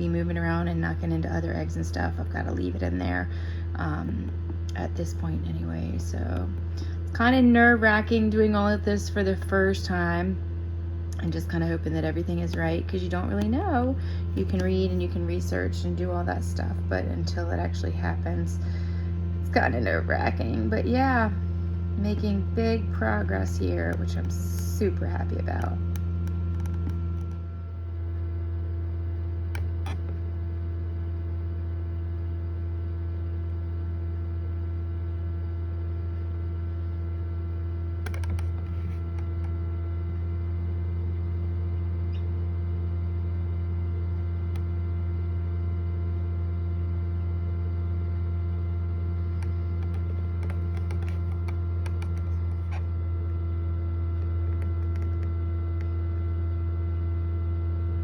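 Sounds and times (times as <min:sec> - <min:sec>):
egg incubator humming: 0:00.0 - 0:58.0
faint clicks and taps: 0:25.9 - 0:27.4, 0:38.0 - 0:39.6, 0:49.3 - 0:52.8, 0:54.2 - 0:56.0.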